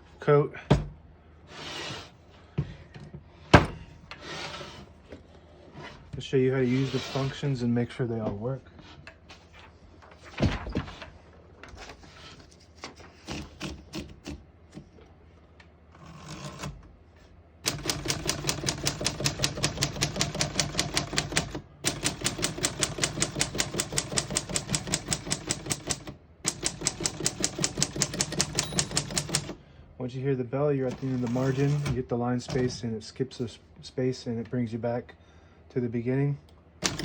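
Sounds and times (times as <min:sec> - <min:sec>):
typewriter keys clattering: 0:17.7 - 0:29.6.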